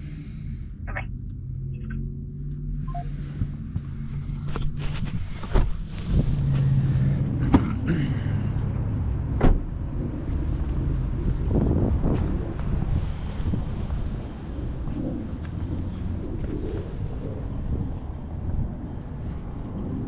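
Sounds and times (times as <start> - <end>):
car engine humming: 0.0 - 13.2.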